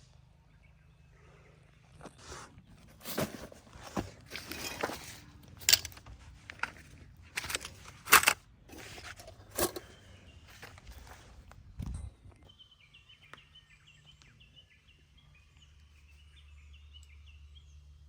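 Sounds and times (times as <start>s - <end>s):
handling scrapes rustles and clatters: 2.0s - 11.7s.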